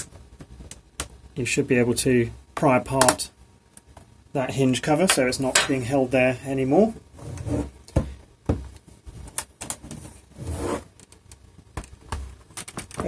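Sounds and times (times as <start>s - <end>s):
plastic scraping and rubbing: 7.2s - 7.8s, 9.2s - 11.0s.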